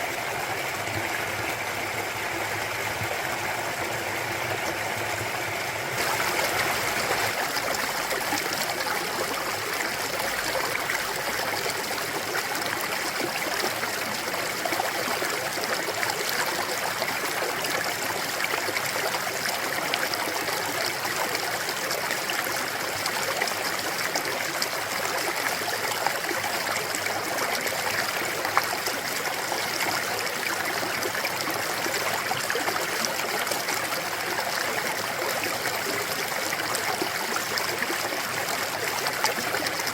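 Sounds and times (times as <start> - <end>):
stream flowing over rocks: 0.0 - 39.9.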